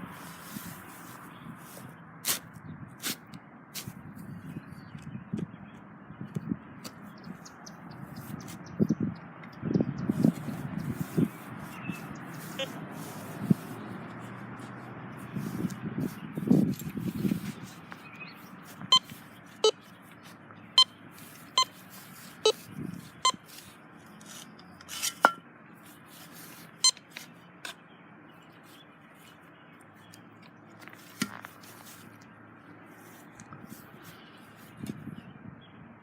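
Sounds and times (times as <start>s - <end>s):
metal detector short beeps: 18.9s - 19.8s, 20.8s - 21.8s, 22.4s - 23.5s, 26.8s - 27.0s.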